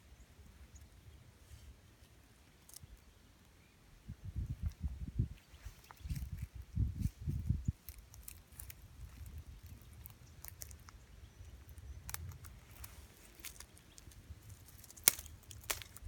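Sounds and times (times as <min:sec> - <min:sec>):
twig snaps: 0:02.6 - 0:03.0, 0:07.8 - 0:11.0, 0:11.6 - 0:16.0
footsteps on sticks and leaves: 0:11.7 - 0:16.0.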